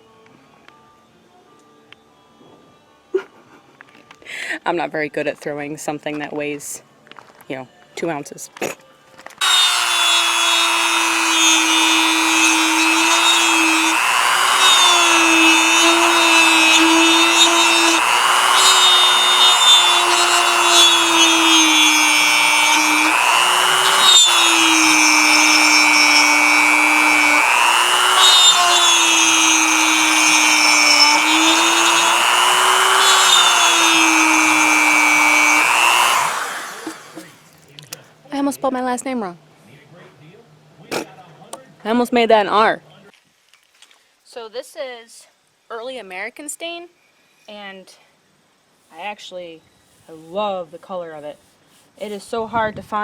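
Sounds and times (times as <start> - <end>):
power tool cutting wood: 9.4 - 37.4.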